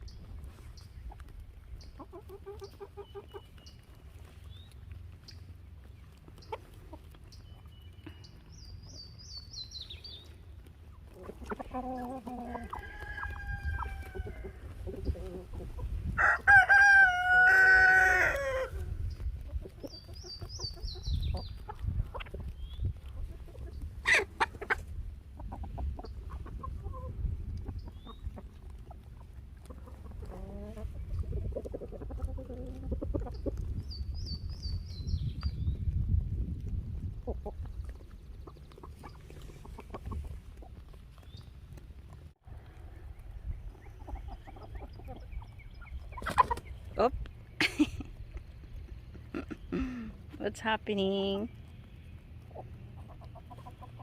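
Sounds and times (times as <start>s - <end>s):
chickens clucking: 0.0s - 54.0s
rooster crowing: 12.6s - 14.6s, 16.2s - 18.8s.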